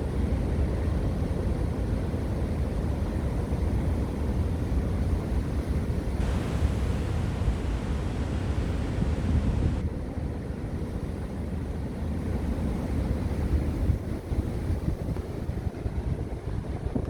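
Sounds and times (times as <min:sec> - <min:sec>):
hiss of surf: 0:06.2 - 0:09.9
sea waves washing on shore: 0:06.2 - 0:09.9
wind buffeting microphone: 0:06.2 - 0:09.9.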